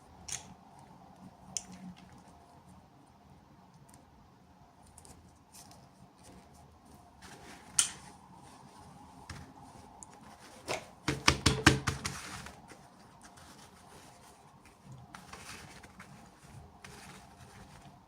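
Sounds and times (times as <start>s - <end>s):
plastic packaging rustling: 12.0s - 18.0s.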